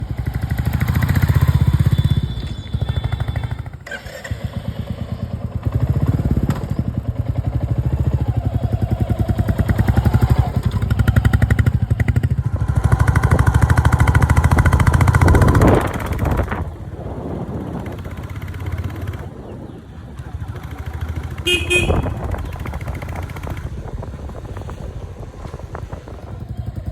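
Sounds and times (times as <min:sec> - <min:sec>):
motorcycle engine revving: 0:00.0 - 0:26.9.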